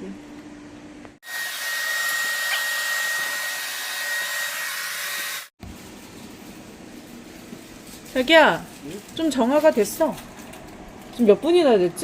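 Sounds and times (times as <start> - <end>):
air purifier fan running: 5.6 - 12.0.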